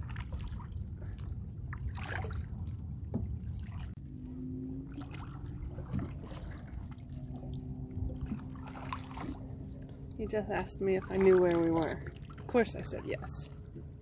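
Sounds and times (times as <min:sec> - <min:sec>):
low rumble: 0:00.0 - 0:14.0
paddle splashing water: 0:00.0 - 0:14.0
faint hum: 0:03.5 - 0:14.0.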